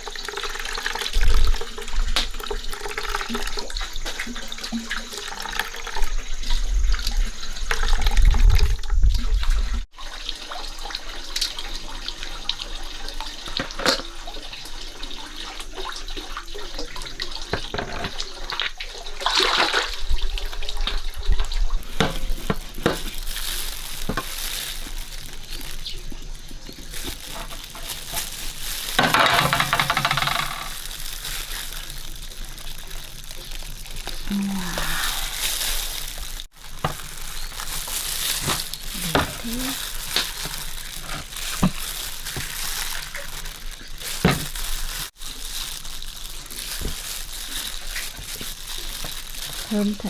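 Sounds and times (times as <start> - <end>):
water splashing and pouring: 0.0 - 50.0
kitchenware knocks and clinks: 29.0 - 30.7.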